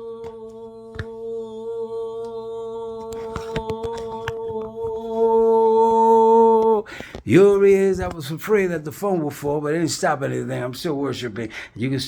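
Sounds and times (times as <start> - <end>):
man singing a long note: 0.0 - 7.9.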